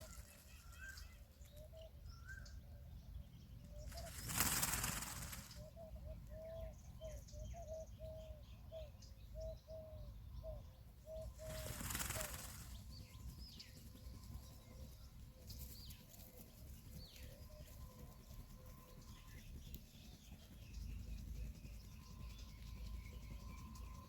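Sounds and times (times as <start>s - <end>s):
bird wings flapping: 0.0s - 1.2s, 3.8s - 5.8s, 11.2s - 24.0s
faint small bird chirps: 0.0s - 24.0s.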